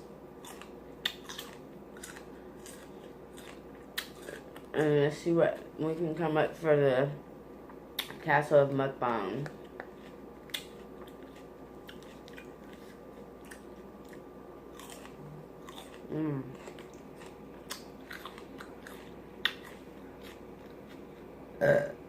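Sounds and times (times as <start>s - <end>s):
person chewing with mouth smacking: 0.4s - 4.8s, 9.4s - 21.3s.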